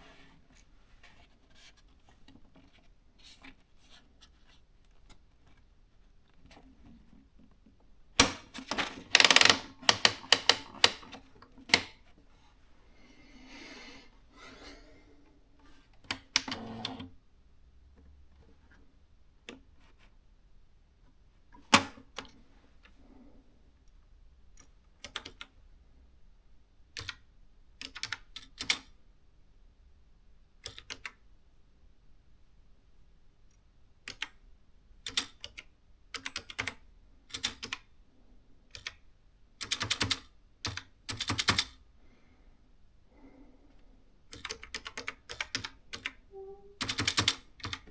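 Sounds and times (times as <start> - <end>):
gentle mechanical whir: 16.4 - 17.1
typewriter keys clicking: 39.6 - 41.7, 46.8 - 47.9.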